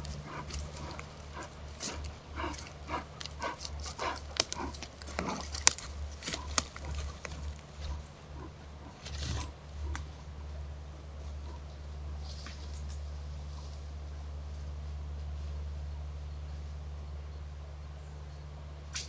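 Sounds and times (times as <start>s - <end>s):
bear breathing in puffs: 0.0s - 5.7s
footsteps: 0.0s - 9.5s.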